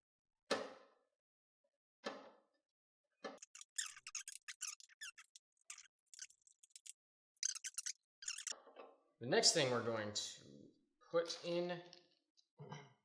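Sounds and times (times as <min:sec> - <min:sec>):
screwdriver clicks and scrapes: 0:03.4 - 0:08.5.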